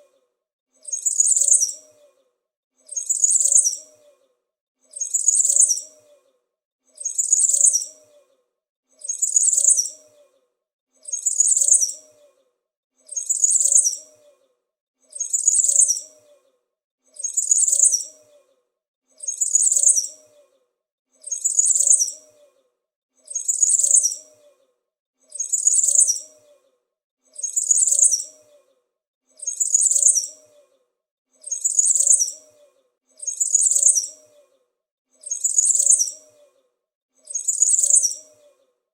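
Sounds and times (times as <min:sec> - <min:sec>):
small bird chirping: 0:00.8 - 0:02.2, 0:02.9 - 0:04.2, 0:04.9 - 0:06.2, 0:07.0 - 0:08.3, 0:09.0 - 0:10.4, 0:11.0 - 0:12.3, 0:13.1 - 0:14.4, 0:15.1 - 0:16.5, 0:17.1 - 0:18.5, 0:19.2 - 0:20.6, 0:21.2 - 0:22.6, 0:23.2 - 0:24.6, 0:25.3 - 0:26.7, 0:27.3 - 0:28.7, 0:29.3 - 0:30.8, 0:31.4 - 0:34.6, 0:35.2 - 0:36.6, 0:37.2 - 0:38.6.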